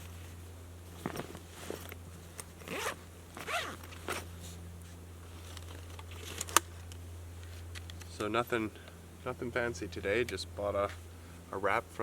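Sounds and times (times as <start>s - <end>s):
zipper pulled in short strokes: 2.6s - 4.3s.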